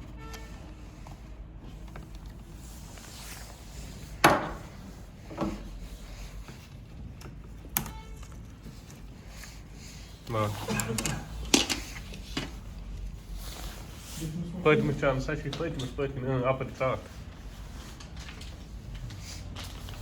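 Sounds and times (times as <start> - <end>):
sharp knocks of hard objects: 4.2 - 4.6.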